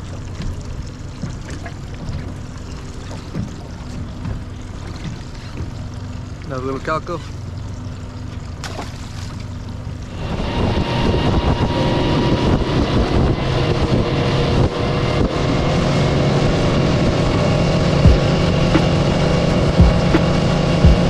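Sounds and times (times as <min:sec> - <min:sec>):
boat engine running: 0:00.0 - 0:21.0
water rushing: 0:00.0 - 0:21.0
wind on microphone: 0:10.1 - 0:21.0.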